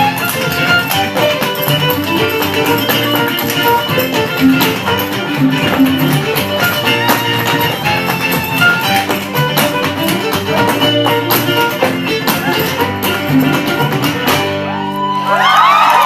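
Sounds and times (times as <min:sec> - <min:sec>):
acoustic band with guitar and fiddle: 0:00.0 - 0:15.8
sharp percussive hits: 0:00.8 - 0:14.4
crowd cheering and whooping: 0:14.4 - 0:16.0.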